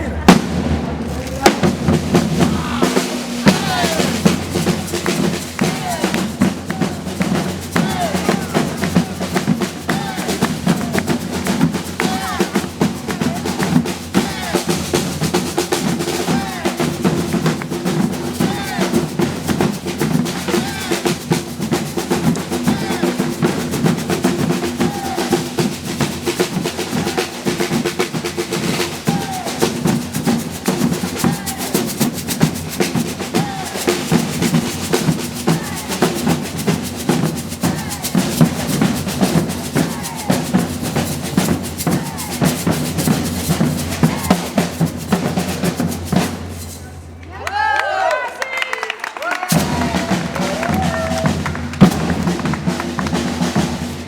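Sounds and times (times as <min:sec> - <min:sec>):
percussion ensemble drumming: 0:00.0 - 0:48.1, 0:49.4 - 0:54.0.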